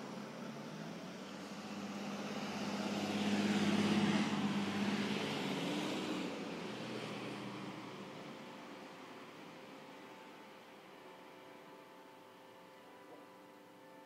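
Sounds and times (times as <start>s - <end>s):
vehicle passing by: 0.0s - 9.0s.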